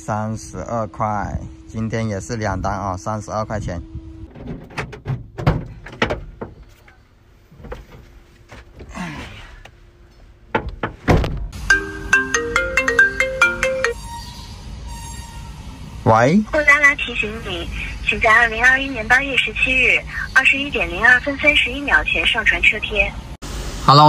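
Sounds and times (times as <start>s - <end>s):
marimba-like phone ringtone: 11.6s - 14.0s.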